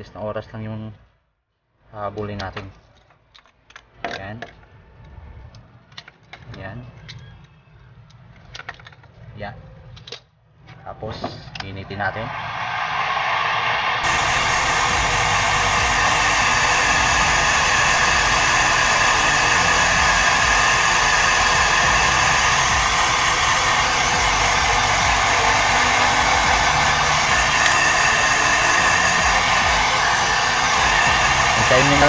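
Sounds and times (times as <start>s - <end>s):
heat gun blowing: 14.0s - 32.0s.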